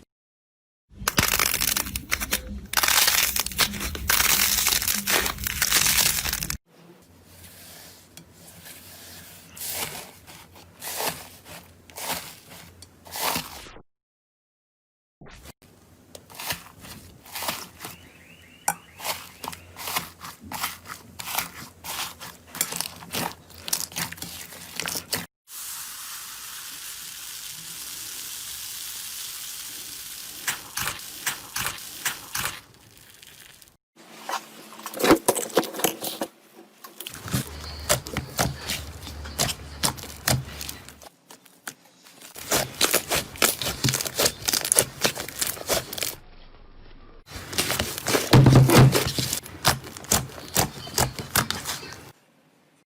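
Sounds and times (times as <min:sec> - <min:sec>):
steady hiss: 0:25.5 - 0:31.2.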